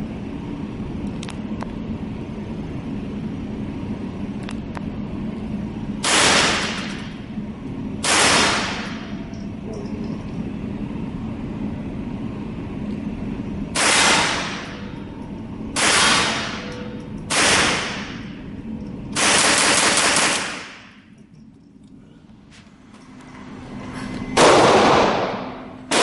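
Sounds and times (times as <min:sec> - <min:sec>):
gunshots: 0:06.0 - 0:07.0, 0:08.0 - 0:09.0, 0:13.8 - 0:14.6, 0:15.8 - 0:16.6, 0:24.4 - 0:26.0.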